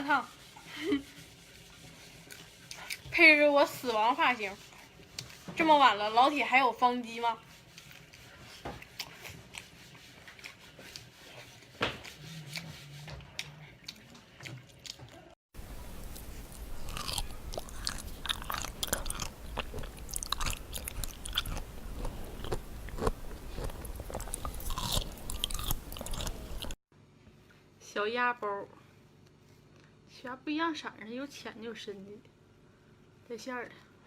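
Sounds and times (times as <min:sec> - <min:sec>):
person chewing with mouth clicks: 0:12.0 - 0:26.8.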